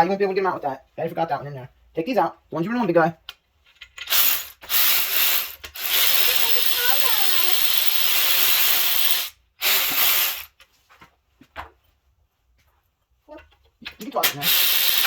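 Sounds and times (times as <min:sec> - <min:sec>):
cordless ratchet motor: 0:04.0 - 0:10.5, 0:14.2 - 0:15.0.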